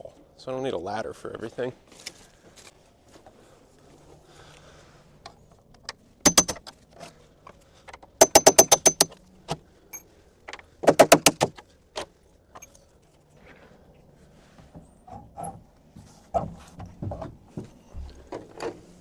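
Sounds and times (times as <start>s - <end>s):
rapid sharp metallic clicking: 6.3s - 6.6s, 8.2s - 9.2s, 10.8s - 11.5s.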